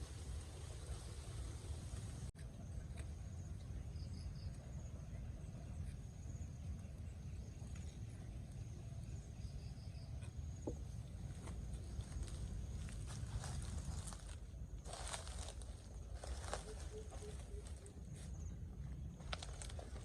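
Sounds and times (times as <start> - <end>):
faint high insect drone: 0.0 - 20.0
steady low rumble: 10.5 - 20.0.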